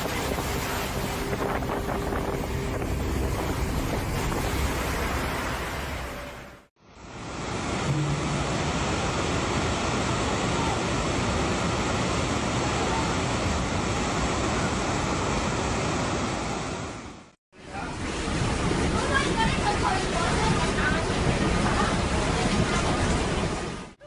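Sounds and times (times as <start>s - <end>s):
steady rushing noise: 2.5s - 12.0s.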